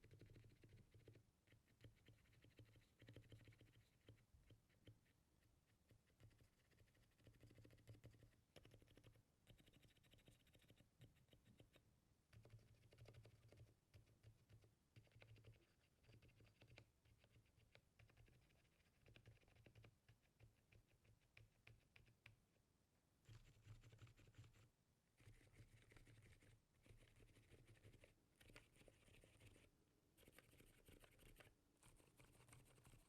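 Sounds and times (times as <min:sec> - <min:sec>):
muted keyboard typing: 0:01.8 - 0:05.0, 0:06.2 - 0:22.1.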